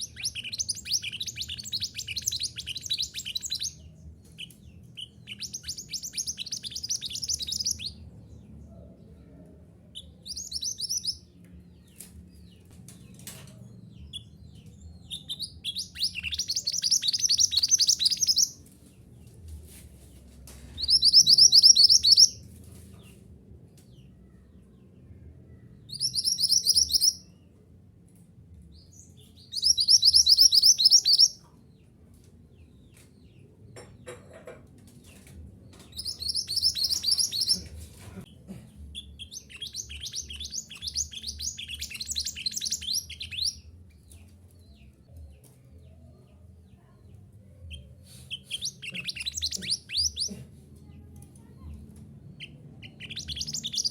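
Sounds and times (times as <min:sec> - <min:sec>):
songbird trilling: 0:00.0 - 0:03.8, 0:15.2 - 0:18.6, 0:20.8 - 0:22.4, 0:26.0 - 0:27.2, 0:29.6 - 0:31.4, 0:36.0 - 0:37.6, 0:39.2 - 0:43.6, 0:48.4 - 0:50.3, 0:52.4 - 0:53.9.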